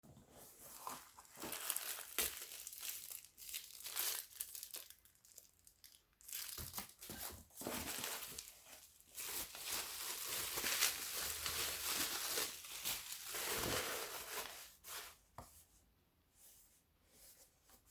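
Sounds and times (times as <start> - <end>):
packaging crinkling and tearing: 0.7 - 14.8.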